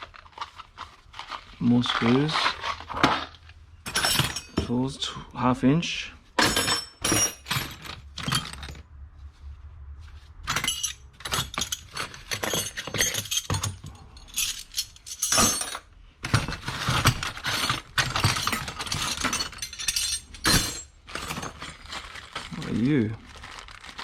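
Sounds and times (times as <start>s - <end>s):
metal tools clinking: 3.8s - 5.2s, 6.4s - 8.8s, 10.4s - 22.8s.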